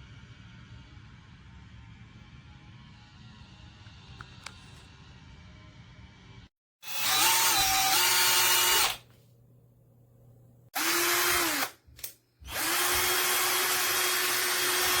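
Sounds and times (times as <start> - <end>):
cordless drill motor running: 6.8 - 9.0, 10.8 - 11.8, 12.4 - 15.0.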